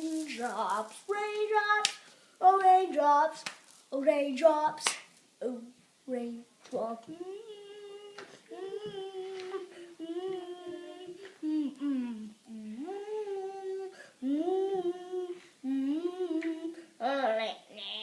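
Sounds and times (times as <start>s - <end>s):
person singing wordless melody: 6.8s - 17.1s.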